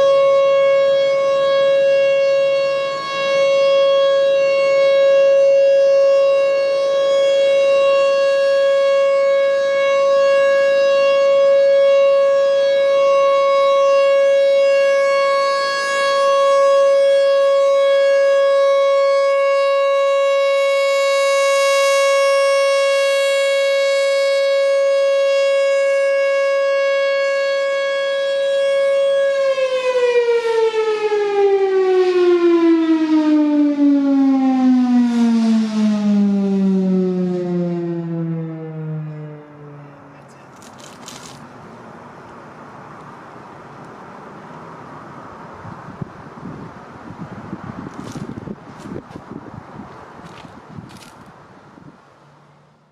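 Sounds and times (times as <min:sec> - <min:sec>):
mechanical warning siren wailing: 0:00.0 - 0:42.3.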